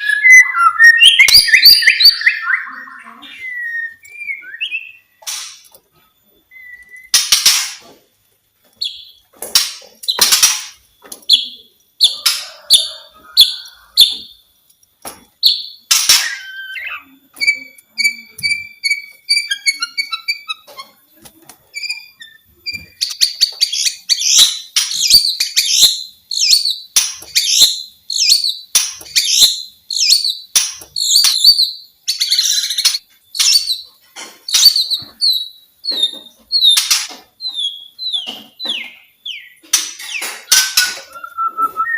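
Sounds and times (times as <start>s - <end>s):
songbird whistling and chipping: 0.0s - 5.1s, 6.5s - 7.2s, 15.4s - 20.7s, 40.4s - 41.9s.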